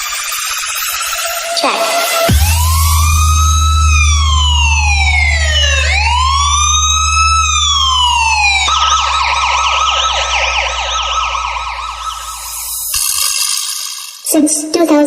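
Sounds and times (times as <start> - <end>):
electronic police siren: 0.0 - 14.2
deep bass drone: 1.3 - 12.9.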